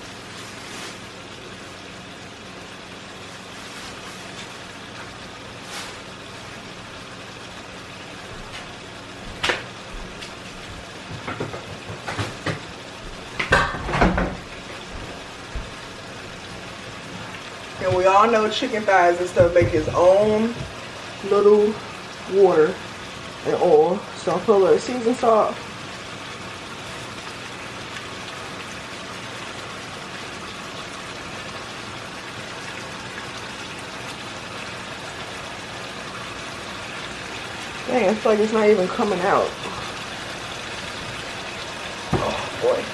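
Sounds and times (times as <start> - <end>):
chicken frying in oil: 0.0 - 42.9
pans and utensils clattering: 11.1 - 12.6.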